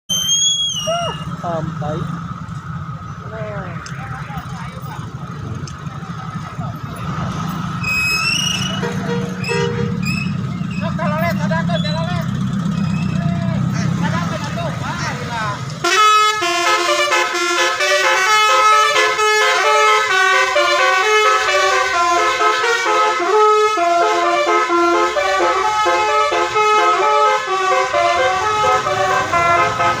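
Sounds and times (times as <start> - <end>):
multi-tone bus horn melody: 7.8 - 11.0, 15.8 - 30.0.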